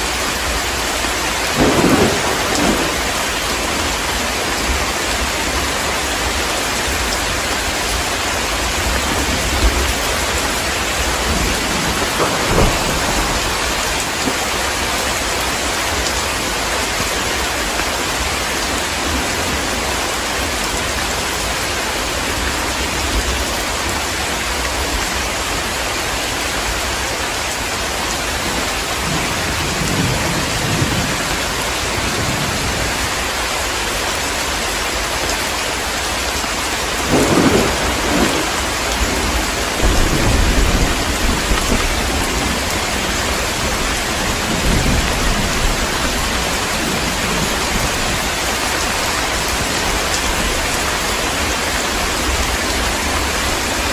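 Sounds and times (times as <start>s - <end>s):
heavy rain: 0.0s - 53.9s
thunder rumbling: 0.4s - 17.4s, 27.5s - 33.3s, 37.0s - 53.9s
thunder clap: 1.5s - 5.7s, 8.5s - 15.4s, 28.4s - 33.1s, 37.0s - 50.8s.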